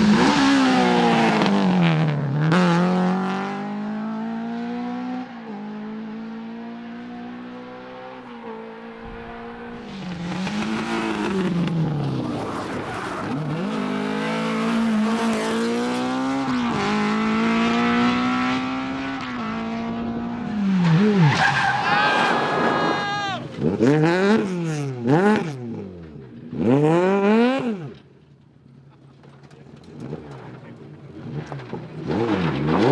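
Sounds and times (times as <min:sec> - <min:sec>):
rally car engine at high revs: 0:00.0 - 0:28.2, 0:29.2 - 0:32.9.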